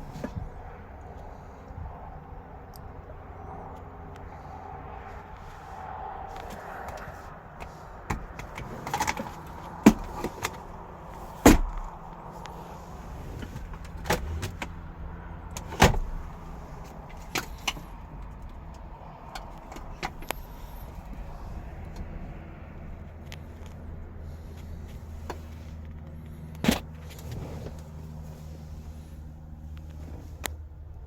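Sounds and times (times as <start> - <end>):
low outdoor hum: 0.0 - 31.0
car doors and fittings clicking: 8.1 - 12.0, 13.3 - 14.9, 15.5 - 18.5, 26.5 - 27.8.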